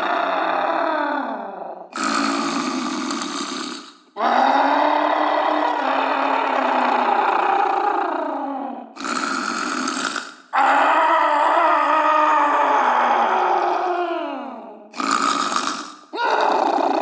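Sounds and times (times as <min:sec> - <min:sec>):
person snoring loudly: 0:00.0 - 0:17.0
breathy hiss: 0:02.0 - 0:04.0.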